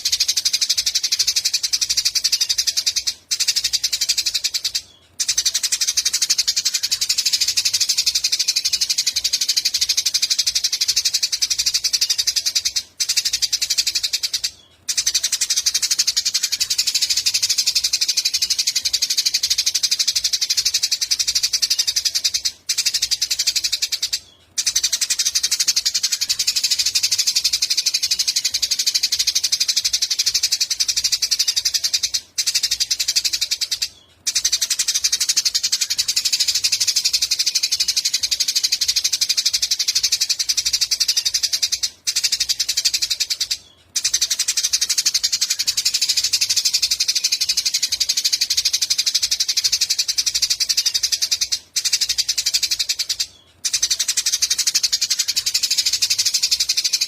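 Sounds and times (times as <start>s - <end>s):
songbird trilling chatter: 0.0s - 57.0s.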